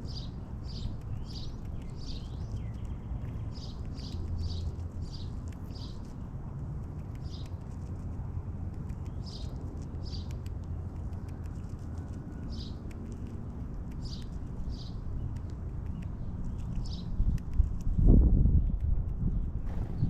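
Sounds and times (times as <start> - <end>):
small birds chirping: 0.0 - 20.0
steady low rumble: 0.0 - 20.0
light ticks: 15.2 - 17.9.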